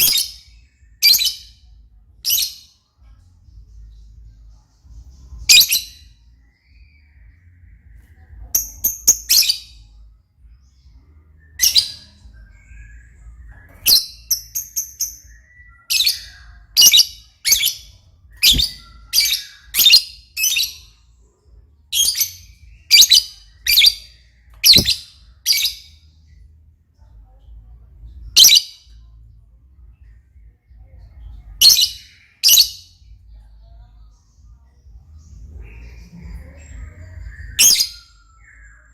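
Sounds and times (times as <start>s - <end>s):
bird chirping shrilly: 24.7s - 25.7s.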